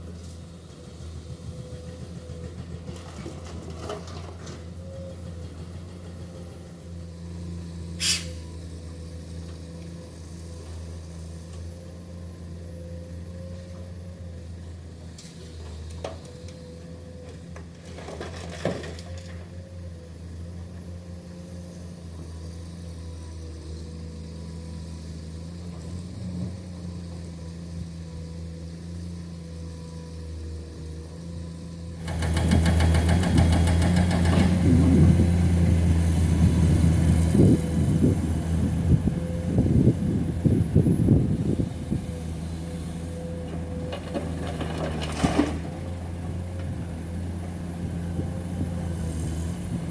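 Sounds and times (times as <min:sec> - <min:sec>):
diesel engine running: 0:20.4 - 0:49.9.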